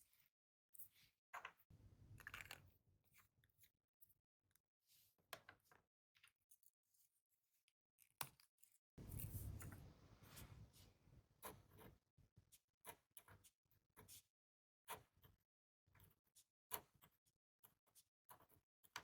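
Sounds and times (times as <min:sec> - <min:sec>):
rustling rub: 0:09.0 - 0:11.1.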